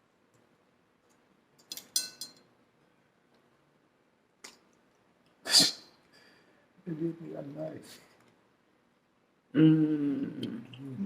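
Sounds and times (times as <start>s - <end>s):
cutlery clinking on a plate: 1.6s - 2.5s.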